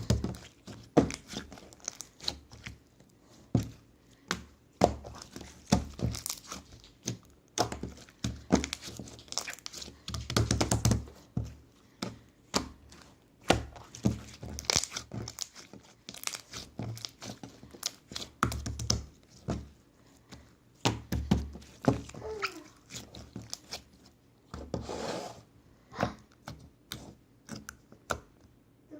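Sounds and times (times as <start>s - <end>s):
slime crackling: 0.0s - 2.8s, 4.8s - 11.2s, 12.4s - 19.7s.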